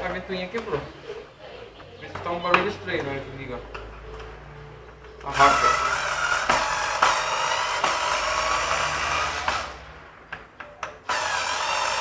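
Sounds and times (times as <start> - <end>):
cordless screwdriver whirring: 5.3 - 9.8, 11.1 - 12.0.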